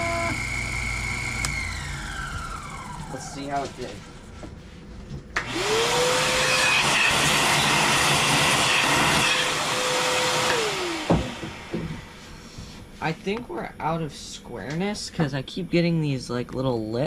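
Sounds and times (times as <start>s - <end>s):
vacuum cleaner running: 0.0s - 4.3s, 5.4s - 12.8s.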